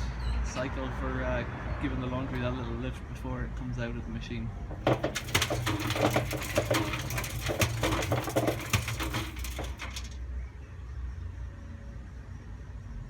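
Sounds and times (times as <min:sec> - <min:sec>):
plastic toy clattering in drum: 0:04.7 - 0:10.2
washing machine drum turning: 0:04.7 - 0:10.2.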